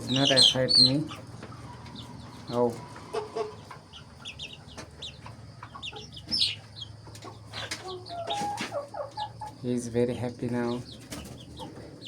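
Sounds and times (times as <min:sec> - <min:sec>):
high-pitched chicken calls: 0:00.0 - 0:09.6
chickens clucking: 0:00.0 - 0:12.0.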